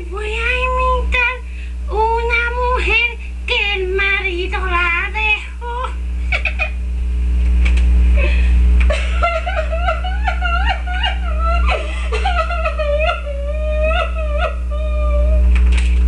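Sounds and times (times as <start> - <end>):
low hum: 0.0 - 16.0
person imitating crying: 9.4 - 15.5.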